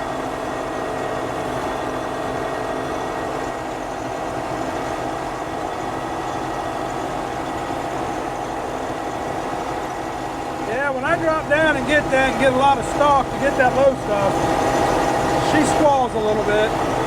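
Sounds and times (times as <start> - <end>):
combine harvester running: 0.0 - 17.0
machinery whining tones: 2.9 - 17.0.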